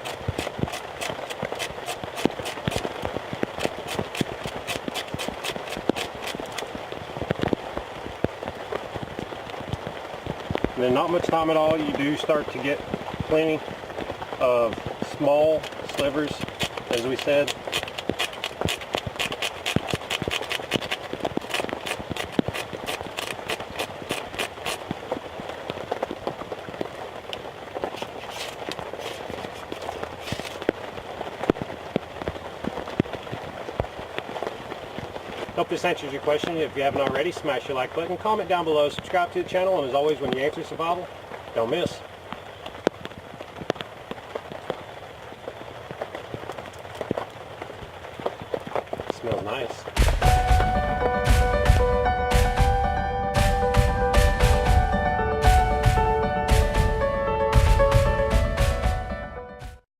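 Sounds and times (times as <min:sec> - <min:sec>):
stick scraping on steel grater: 0:00.0 - 0:02.8, 0:03.6 - 0:06.6, 0:15.9 - 0:24.8, 0:28.0 - 0:30.6.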